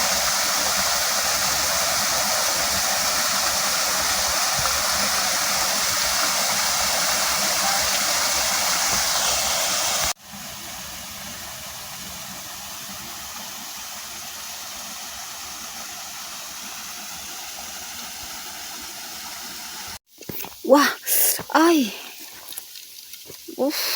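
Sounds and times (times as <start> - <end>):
waterfall rushing: 0.0 - 10.2.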